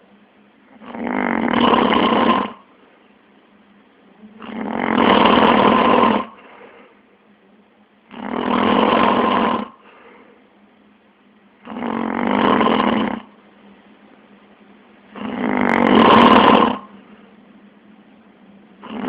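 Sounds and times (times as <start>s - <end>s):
man snoring: 0.7s - 2.7s, 4.4s - 6.4s, 8.1s - 9.8s, 11.6s - 13.4s, 15.1s - 17.0s, 18.8s - 19.0s.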